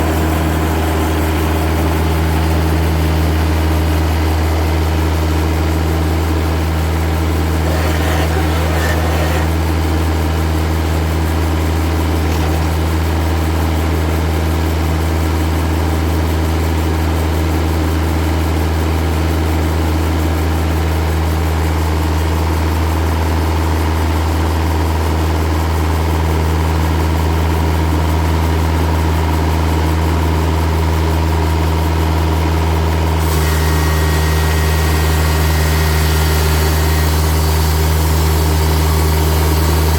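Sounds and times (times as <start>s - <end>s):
engine humming: 7.5s - 9.8s
saw blade hissing: 7.6s - 9.6s
thin high whine: 7.6s - 9.6s.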